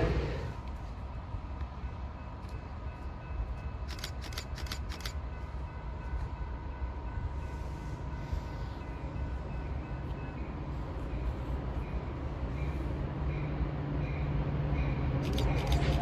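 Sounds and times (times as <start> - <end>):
train rumbling by: 0.0 - 16.0
sharp clicks: 3.9 - 5.2, 15.2 - 16.0.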